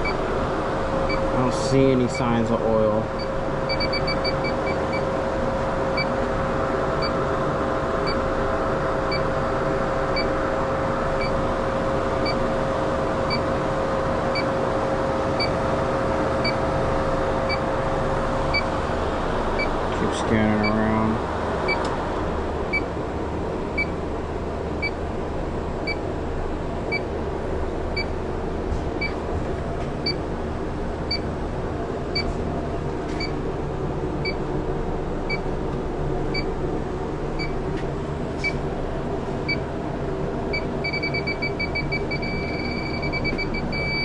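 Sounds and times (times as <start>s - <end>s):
leak detector beeping: 0.0s - 0.2s, 3.2s - 5.1s, 6.0s - 6.2s, 8.0s - 8.2s, 9.1s - 9.3s, 11.2s - 11.4s, 15.4s - 15.6s, 40.5s - 44.0s
machine hum: 0.0s - 44.0s.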